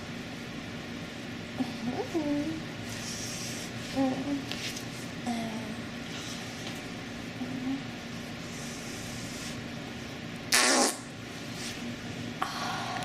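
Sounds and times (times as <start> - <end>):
steady low hum: 0.0 - 13.0
raspy fart sound effect: 10.5 - 11.1.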